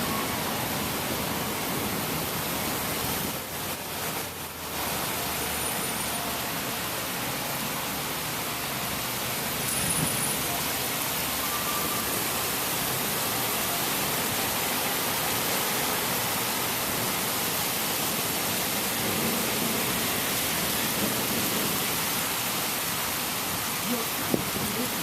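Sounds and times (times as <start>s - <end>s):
steady rain falling: 0.0s - 25.0s.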